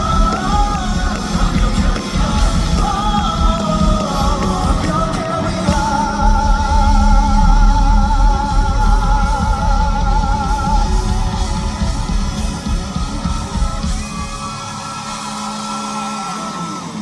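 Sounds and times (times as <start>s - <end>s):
electric guitar sustained note: 0.0s - 17.0s
live rock band: 0.0s - 17.0s.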